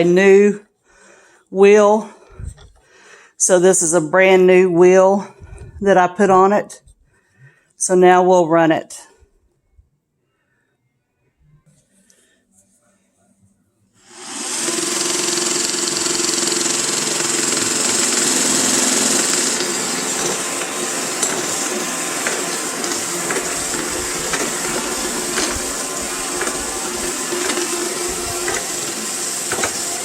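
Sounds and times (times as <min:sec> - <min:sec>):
robot vacuum running: 0:14.0 - 0:30.0.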